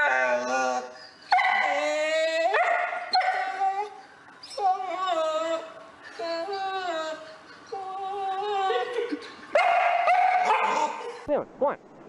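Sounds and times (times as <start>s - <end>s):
dog howling: 0.0s - 11.2s.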